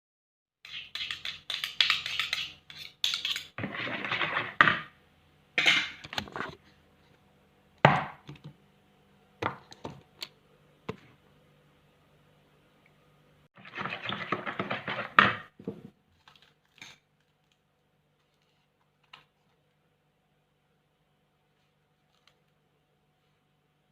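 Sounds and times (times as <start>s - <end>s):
utensil scraping: 0.6s - 4.6s.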